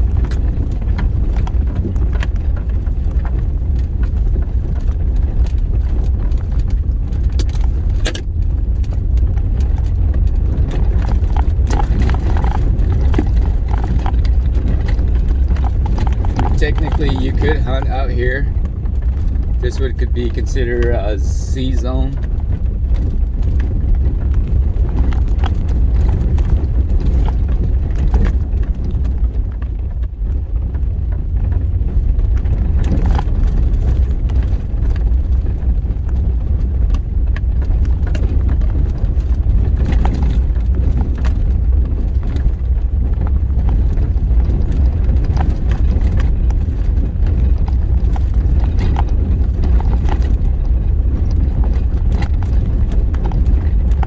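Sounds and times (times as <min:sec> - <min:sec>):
vehicle rattling over bumps: 0:00.0 - 0:54.0
vehicle rumbling on dirt road: 0:00.0 - 0:54.0.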